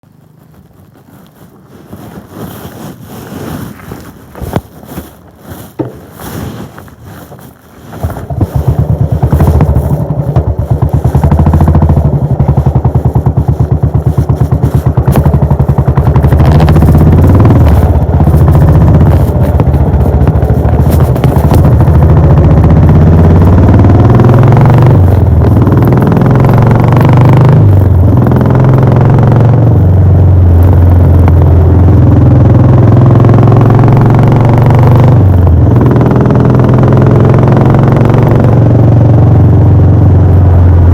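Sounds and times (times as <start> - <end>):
clicks and handling noises: 0.2 - 10.1
motorcycle engine thumping: 4.3 - 6.2, 7.9 - 27.1.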